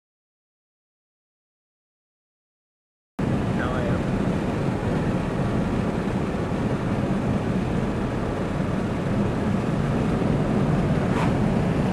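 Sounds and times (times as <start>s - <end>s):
road and engine noise in car: 3.2s - 11.9s.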